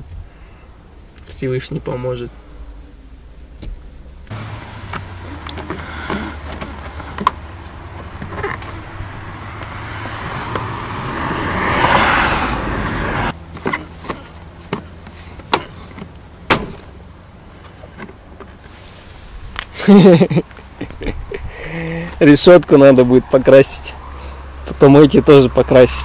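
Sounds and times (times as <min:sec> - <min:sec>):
car engine running: 0:04.0 - 0:18.4.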